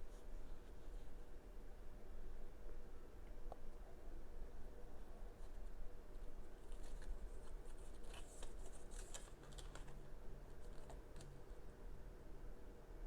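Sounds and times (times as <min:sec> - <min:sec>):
packaging rustling and crinkling: 0:06.6 - 0:11.3.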